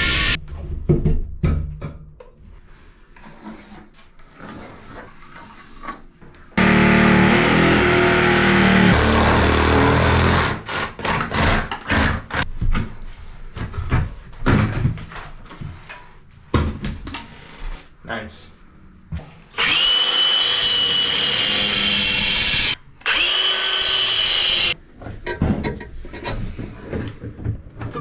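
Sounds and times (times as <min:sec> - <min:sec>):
power tool motor running: 0:06.6 - 0:10.5, 0:19.6 - 0:24.8.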